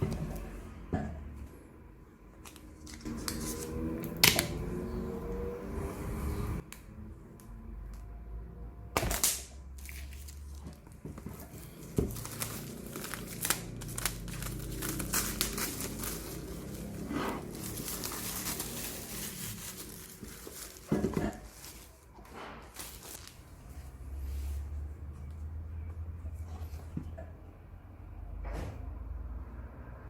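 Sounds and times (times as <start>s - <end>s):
wrapping crinkling and tearing: 9.1s - 22.1s, 22.7s - 23.6s.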